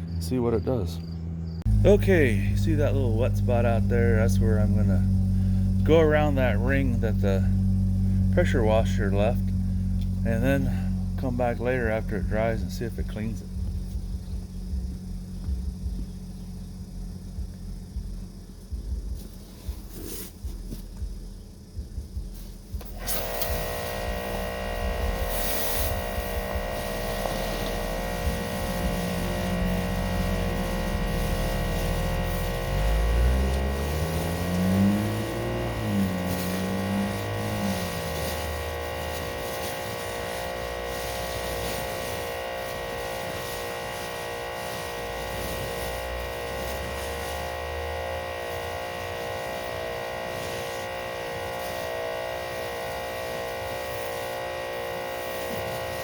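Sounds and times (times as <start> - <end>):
pressure washer whine: 0.0 - 56.0
low wavering sound: 1.3 - 18.3.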